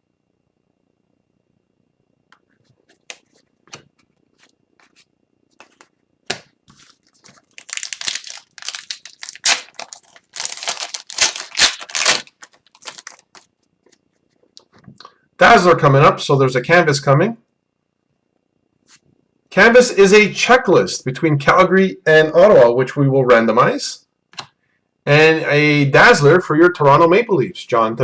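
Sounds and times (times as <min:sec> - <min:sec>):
papery rustling of cards and wrapper: 0:06.7 - 0:14.0.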